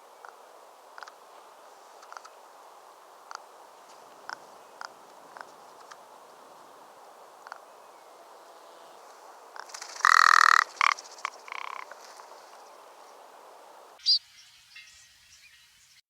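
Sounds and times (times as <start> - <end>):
bird croaking calls: 9.6 - 12.3
short high bird call: 14.0 - 15.0.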